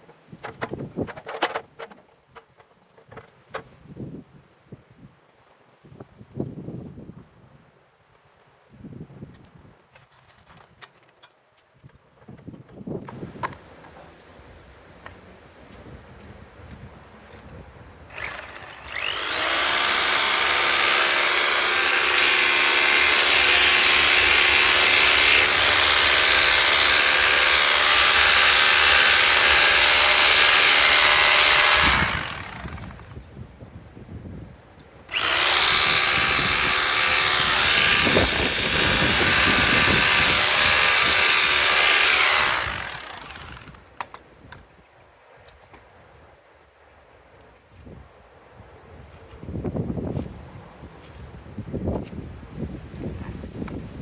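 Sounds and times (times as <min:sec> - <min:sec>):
electric drill boring into wall: 0:18.1 - 0:33.2, 0:35.1 - 0:43.9.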